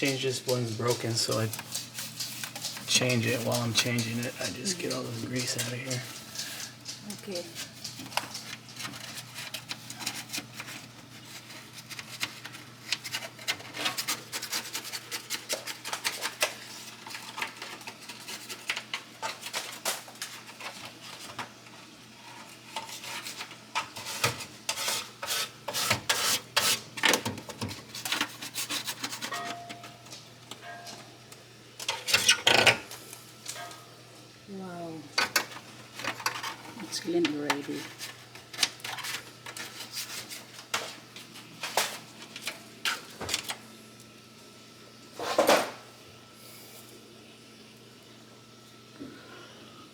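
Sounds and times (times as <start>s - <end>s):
rag scrubbing metal: 0.0s - 18.6s, 22.7s - 27.1s.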